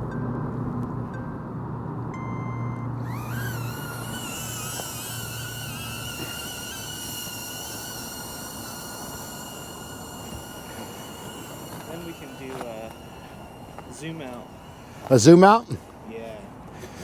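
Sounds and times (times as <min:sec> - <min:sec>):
low hum: 0:00.0 - 0:16.7
short electronic beep: 0:02.1 - 0:03.0
drone propellers whining: 0:02.2 - 0:17.0.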